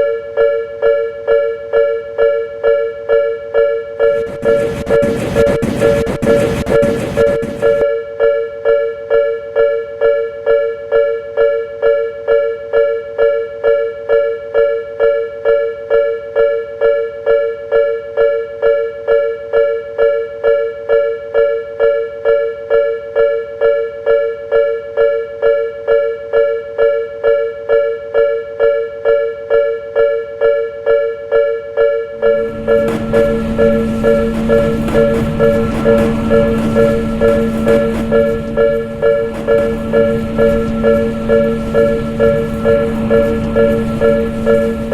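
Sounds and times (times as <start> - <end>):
railroad crossing warning bell: 3.6 - 7.8, 32.2 - 44.9.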